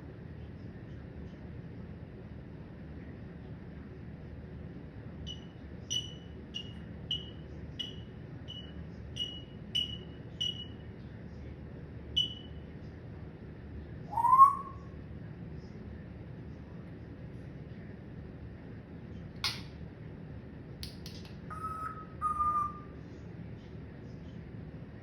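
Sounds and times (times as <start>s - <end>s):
parrot chirping: 5.3s - 10.8s, 12.2s - 12.5s, 14.1s - 14.9s, 21.5s - 22.9s
parrot call rising and falling: 14.1s - 14.8s, 21.5s - 22.9s.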